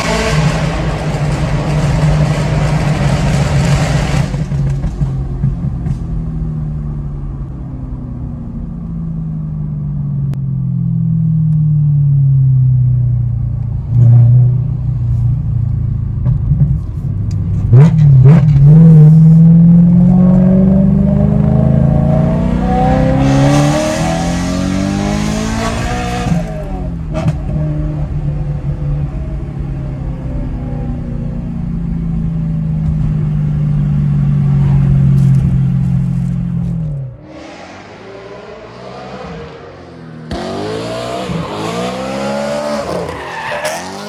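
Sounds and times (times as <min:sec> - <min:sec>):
engine revving: 0:17.7 - 0:27.5, 0:37.2 - 0:43.1.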